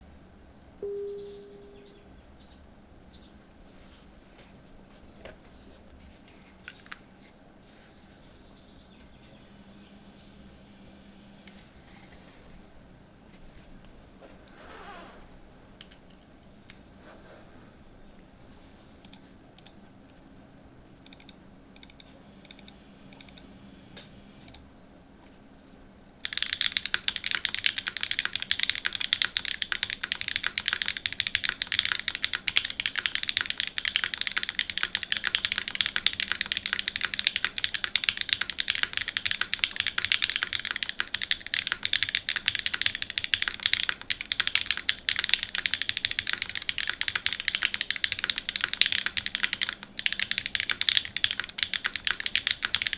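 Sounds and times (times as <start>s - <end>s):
typing on mechanical keyboard: 21.0s - 23.4s, 26.2s - 52.9s.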